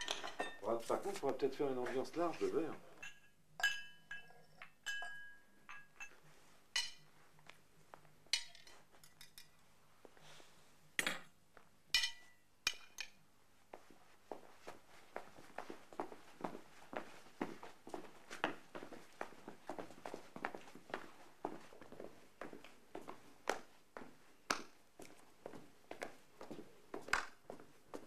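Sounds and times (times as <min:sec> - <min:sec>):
glasses and dishes clinking: 0:00.0 - 0:00.7, 0:02.9 - 0:06.2, 0:06.8 - 0:07.1, 0:08.3 - 0:09.5, 0:12.0 - 0:13.2.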